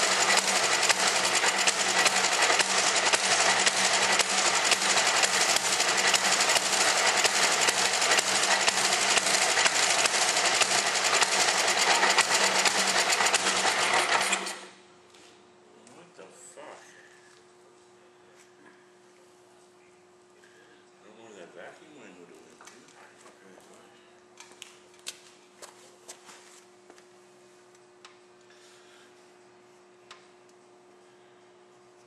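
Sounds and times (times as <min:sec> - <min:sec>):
snowblower engine running: 0:00.0 - 0:14.8.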